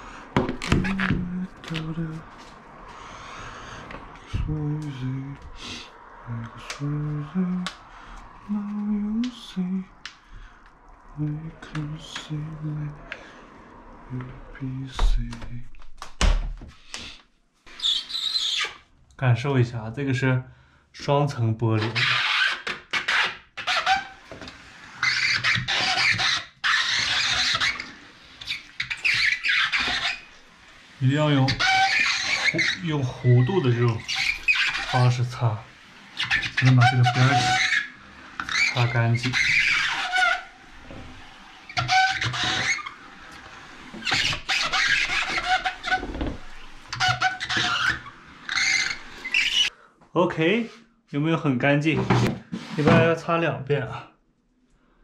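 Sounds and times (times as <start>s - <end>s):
squeegee squeaks: 0.0s - 13.2s, 16.8s - 18.9s, 21.7s - 49.7s.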